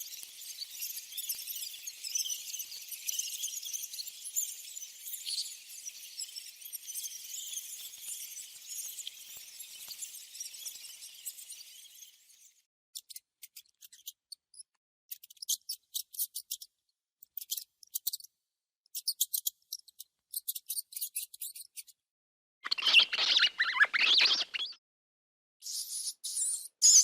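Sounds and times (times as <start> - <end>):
mouse squeaking: 0.0 - 12.1, 13.0 - 16.7, 17.4 - 18.3, 18.9 - 22.0, 22.7 - 24.8, 25.6 - 27.0.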